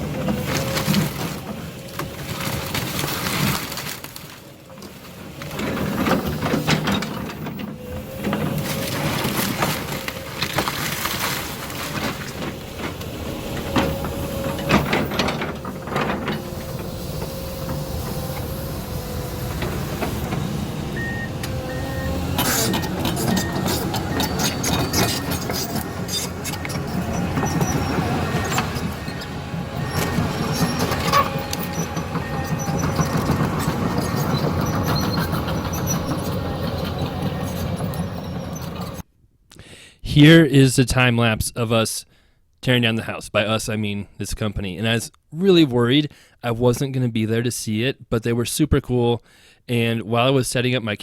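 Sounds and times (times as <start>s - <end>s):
timber cracking and crashing: 0.0s - 36.0s
machinery engine hum: 0.0s - 39.0s.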